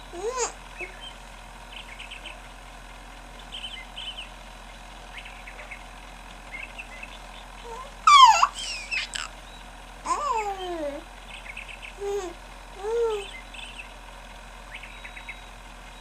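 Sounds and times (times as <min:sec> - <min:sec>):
baby cooing: 0:07.6 - 0:09.3, 0:10.1 - 0:11.0, 0:12.0 - 0:13.3
faint high chirps: 0:14.7 - 0:16.0.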